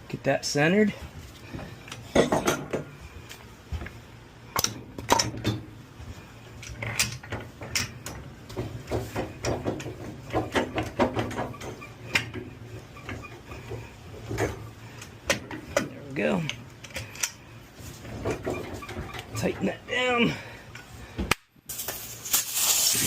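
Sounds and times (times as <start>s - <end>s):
metal clicks and clanks: 4.6s - 5.6s, 6.6s - 17.4s.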